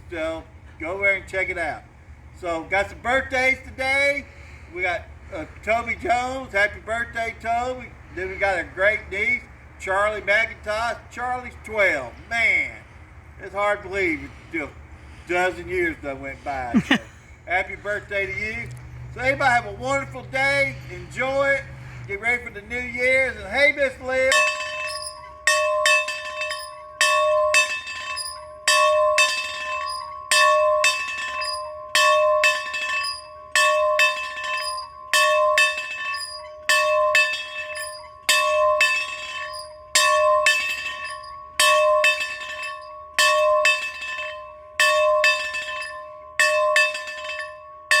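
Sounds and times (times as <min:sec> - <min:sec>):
bell ringing: 0:24.3 - 0:48.0.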